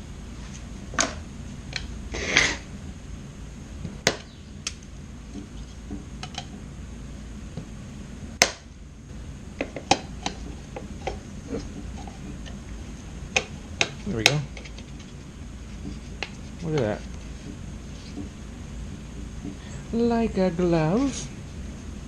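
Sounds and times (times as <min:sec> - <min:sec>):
short scraping cut: 0:02.1 - 0:02.7.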